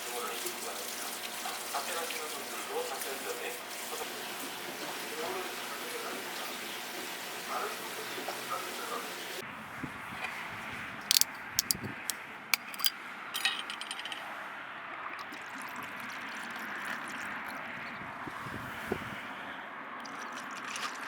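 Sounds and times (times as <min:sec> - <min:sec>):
small metal objects clinking: 0:11.1 - 0:11.8, 0:12.6 - 0:14.3.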